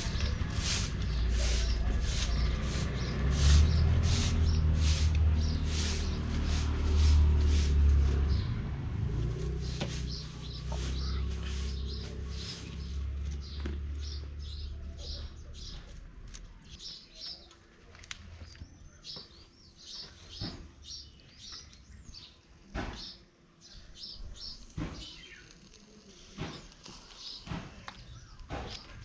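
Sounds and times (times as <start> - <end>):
bird calling high chirps: 9.7 - 13.0.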